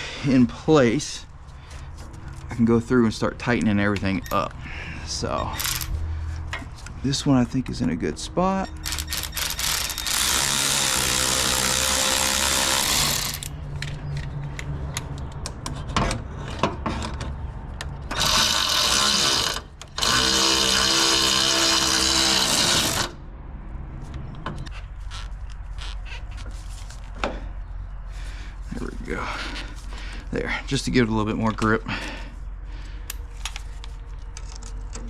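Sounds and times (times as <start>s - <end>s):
power driver running: 8.8s - 13.5s, 18.1s - 23.2s.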